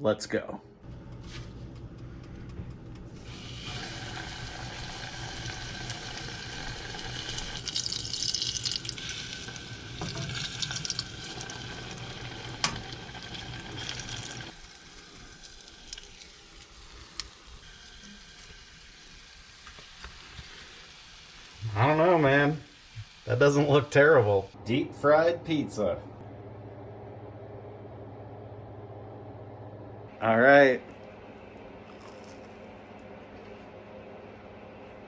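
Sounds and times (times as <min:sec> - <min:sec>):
low steady hum: 0:00.3 - 0:16.3, 0:21.5 - 0:35.0
food sizzling in hot oil: 0:03.2 - 0:24.6.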